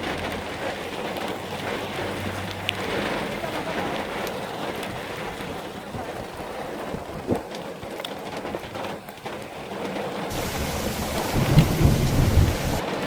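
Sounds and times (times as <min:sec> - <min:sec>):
rain falling: 0:00.0 - 0:13.0
raindrop hits: 0:10.3 - 0:12.8.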